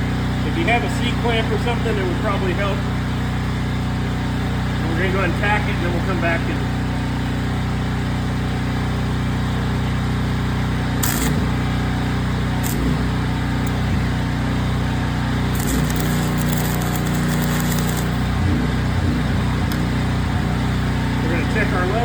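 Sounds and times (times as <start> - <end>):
engine-driven welder running: 0.0 - 22.0
welding arc crackle: 10.0 - 21.4.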